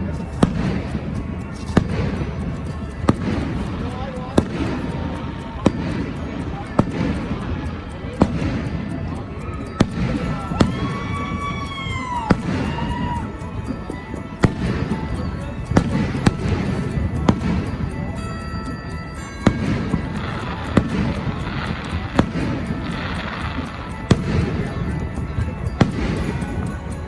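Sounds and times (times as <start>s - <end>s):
firework shells bursting: 0.0s - 7.4s.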